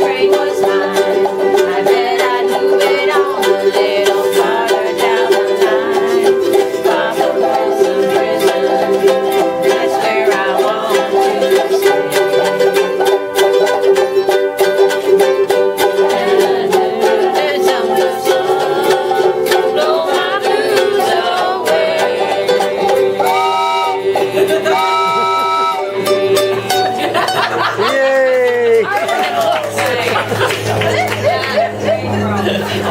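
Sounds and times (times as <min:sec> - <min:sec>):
ukuleles strumming: 0:00.0 - 0:32.9
train whistle blasts: 0:23.3 - 0:26.0.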